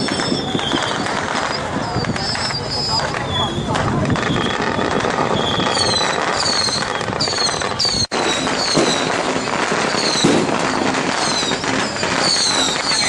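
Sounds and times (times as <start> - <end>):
firecrackers crackling: 0.0 - 13.0
high falling whistle: 4.2 - 13.0.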